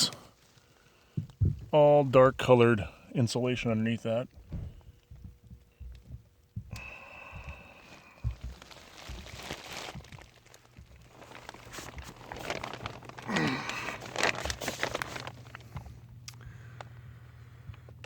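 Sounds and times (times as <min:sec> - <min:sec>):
steady low hum: 0:00.0 - 0:18.0
person crawling and crinkling: 0:06.9 - 0:16.0.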